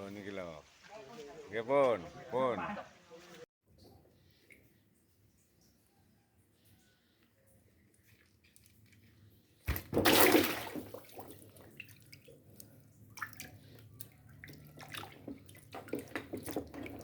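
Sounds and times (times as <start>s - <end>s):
small splashes and drips: 3.7s - 17.0s
loud water splash: 9.7s - 11.3s.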